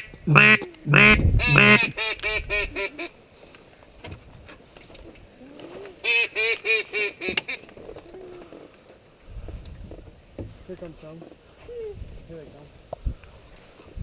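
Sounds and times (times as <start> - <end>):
duck quacking: 0.0 - 3.1.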